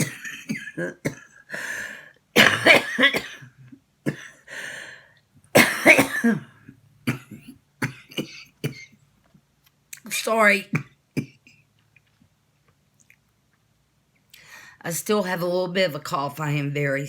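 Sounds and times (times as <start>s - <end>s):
woman clearing throat: 0.0s - 1.4s, 2.4s - 4.3s, 5.6s - 8.9s
woman coughing: 0.0s - 1.4s, 2.4s - 4.5s, 5.6s - 8.9s.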